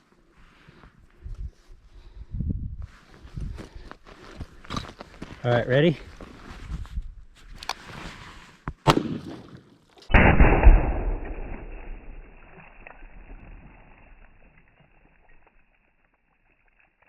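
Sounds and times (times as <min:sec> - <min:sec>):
revolver gunshot crack: 0:08.8 - 0:09.4, 0:10.1 - 0:13.0
slowed deep muffled boom: 0:10.2 - 0:13.4.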